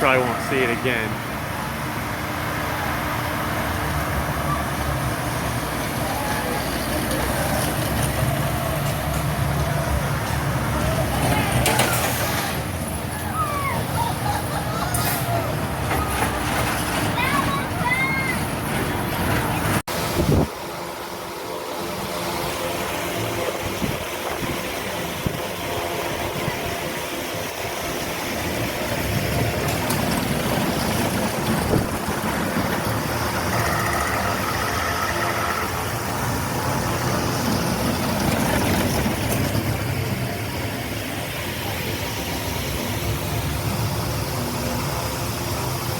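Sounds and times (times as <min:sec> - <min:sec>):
roller coaster wheels rumbling: 0:00.0 - 0:45.9.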